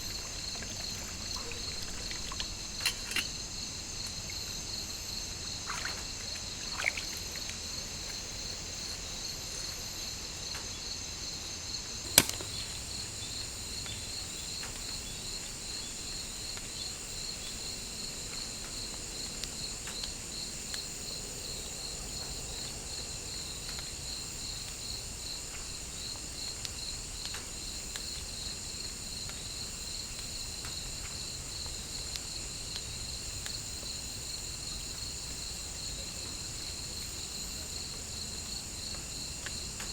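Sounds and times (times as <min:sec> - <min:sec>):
insect trills: 0:00.0 - 0:39.9
sharp click: 0:12.1 - 0:12.8.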